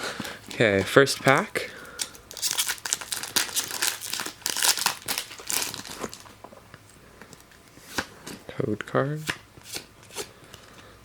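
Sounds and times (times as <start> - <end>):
foil wrapper tearing and crinkling: 1.2 - 6.4.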